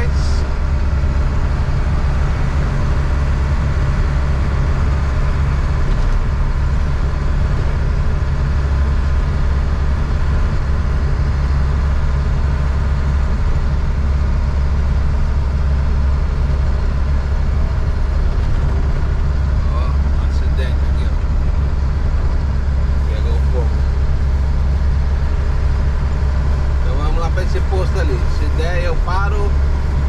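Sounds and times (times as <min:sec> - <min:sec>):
diesel truck engine drone: 0:00.0 - 0:30.0
road noise: 0:00.0 - 0:30.0.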